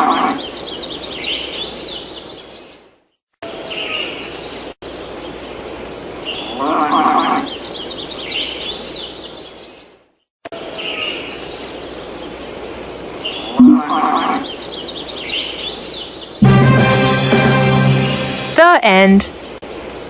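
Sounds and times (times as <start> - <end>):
cow mooing: 0.0 - 0.4, 13.6 - 14.5.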